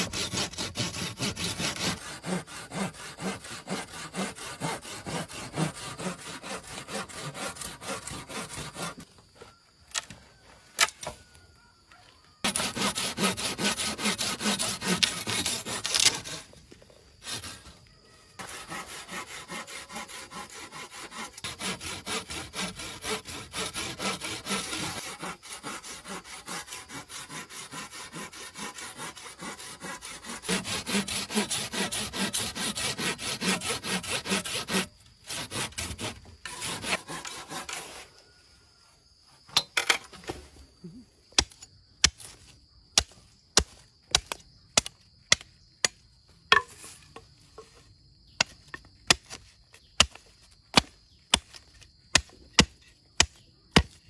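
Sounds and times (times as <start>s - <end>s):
hand saw cutting wood: 0.0s - 9.1s, 12.4s - 16.6s, 17.2s - 17.7s, 18.4s - 38.2s, 50.8s - 54.0s.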